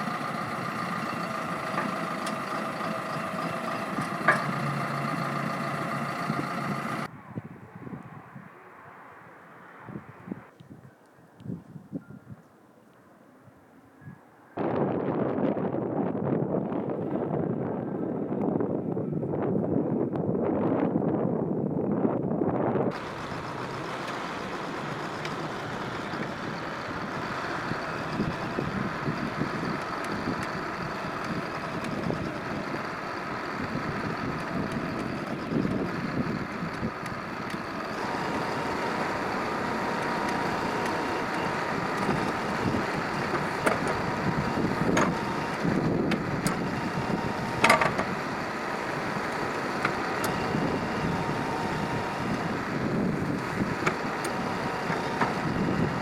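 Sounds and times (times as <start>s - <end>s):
backhoe engine running: 0.0s - 7.1s, 22.8s - 56.0s.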